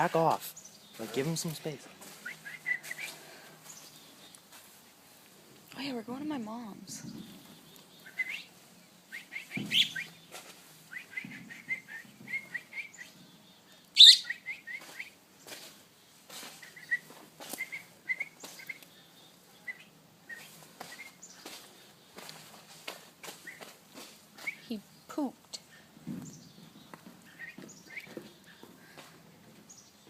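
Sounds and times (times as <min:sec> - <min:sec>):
fledgling bird peeping: 0:02.1 - 0:04.4, 0:07.0 - 0:22.5, 0:23.2 - 0:29.0.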